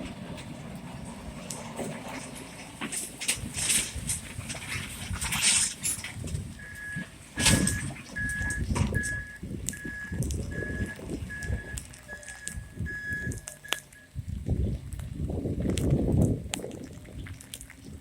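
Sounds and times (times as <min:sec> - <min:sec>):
low rumble: 0:03.4 - 0:18.0
vehicle backup alarm beeping: 0:06.6 - 0:14.2.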